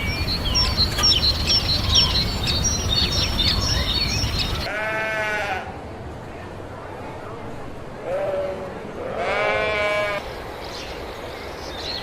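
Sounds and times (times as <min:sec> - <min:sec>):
small birds chirping: 0:00.0 - 0:04.7
sheep bleating: 0:04.7 - 0:05.7, 0:08.1 - 0:10.2.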